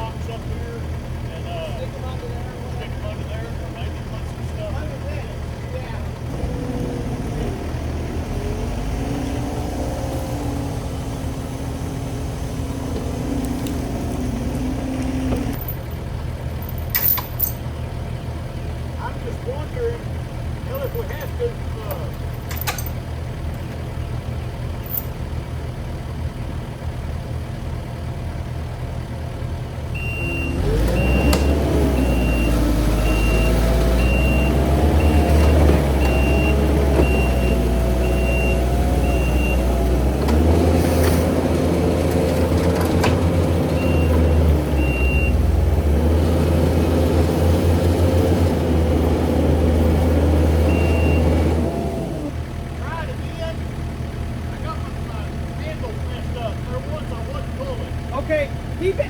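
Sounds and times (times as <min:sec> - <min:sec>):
skid steer engine revving: 0:00.0 - 0:59.0
backup alarm beeping: 0:29.9 - 0:39.7, 0:43.8 - 0:45.4.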